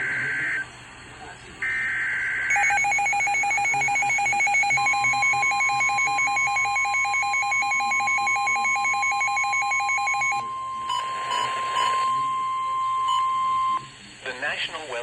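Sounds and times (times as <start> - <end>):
steady single-pitch alert tone: 2.5 - 13.8.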